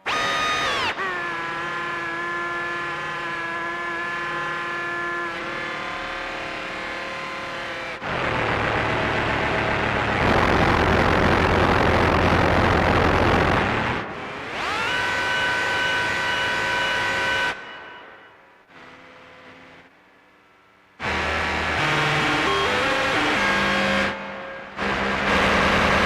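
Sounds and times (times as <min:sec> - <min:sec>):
noisy hiss over low buzz: 0:08.7 - 0:14.2.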